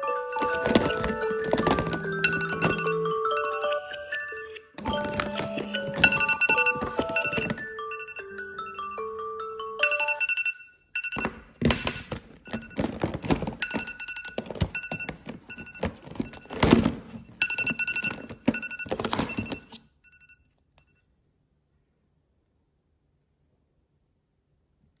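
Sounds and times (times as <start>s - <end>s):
phone ringtone beeping: 0.0s - 20.4s
knocks and thuds of handling: 0.4s - 2.9s, 4.8s - 7.7s, 11.2s - 19.8s.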